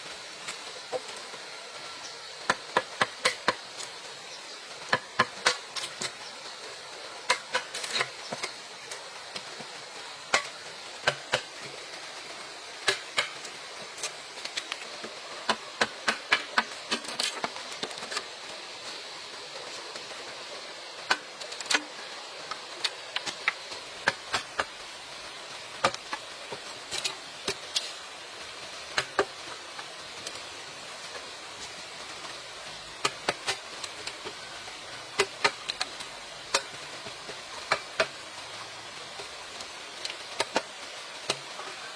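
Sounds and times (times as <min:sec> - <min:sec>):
steady high hiss: 0:00.0 - 0:41.9
hand tools knocking on bamboo: 0:04.9 - 0:05.6.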